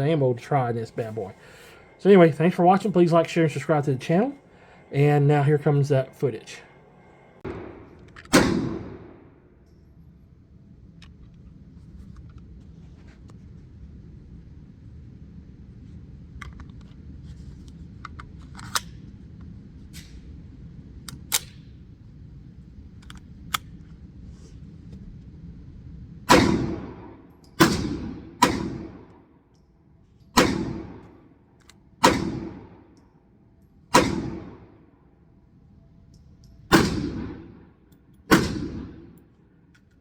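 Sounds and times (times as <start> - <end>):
pistol shots echoing: 7.4 - 9.4, 26.3 - 29.2, 30.4 - 31.2, 32.0 - 33.0, 33.9 - 34.8, 36.7 - 37.7, 38.3 - 39.2.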